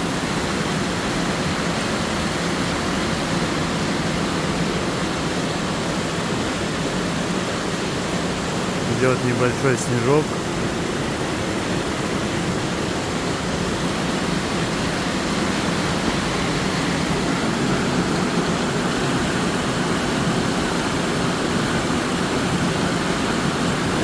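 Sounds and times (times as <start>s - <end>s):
waterfall rushing: 0.0s - 24.0s.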